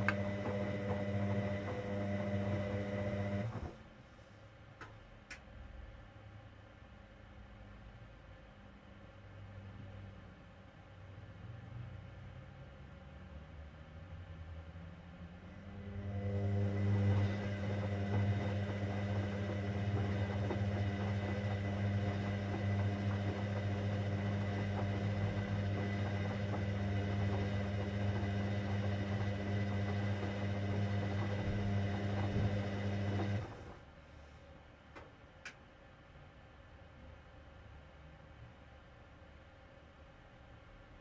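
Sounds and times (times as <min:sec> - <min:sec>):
washing machine hum: 0:00.0 - 0:04.0, 0:15.4 - 0:34.3.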